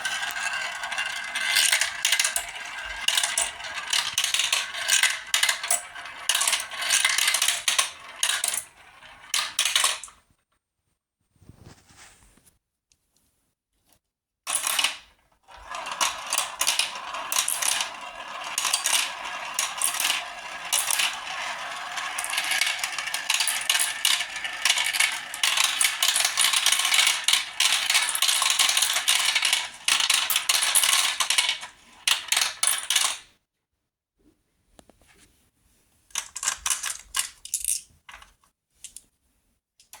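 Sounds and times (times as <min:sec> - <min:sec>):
marbles clattering down a track: 0:00.0 - 0:10.1, 0:14.5 - 0:33.2.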